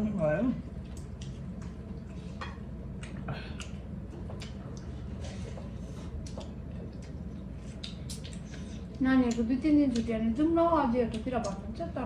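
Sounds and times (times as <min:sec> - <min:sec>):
steady low hum: 0:00.0 - 0:12.0
wet chewing smacks: 0:02.9 - 0:10.1.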